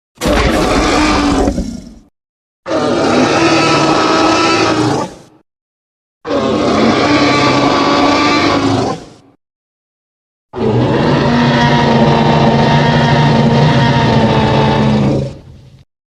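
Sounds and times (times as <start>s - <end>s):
dinosaur roar: 0.2s - 2.1s, 2.7s - 5.4s, 6.2s - 9.2s, 10.6s - 15.6s.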